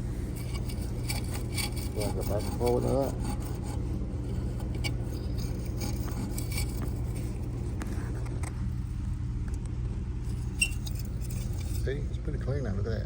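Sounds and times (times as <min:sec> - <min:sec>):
brush scrubbing metal: 0:00.0 - 0:08.2, 0:10.3 - 0:12.0
steady low hum: 0:00.0 - 0:13.0.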